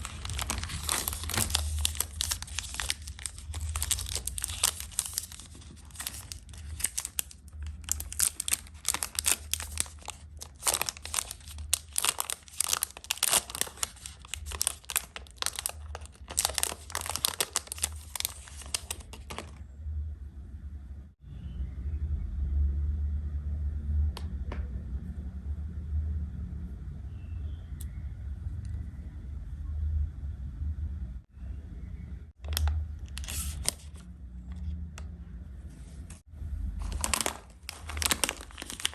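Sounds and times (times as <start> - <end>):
plastic wrappers crinkling and tearing: 0.0 - 19.6, 32.4 - 34.1, 36.8 - 38.9
low steady hum: 0.0 - 38.9.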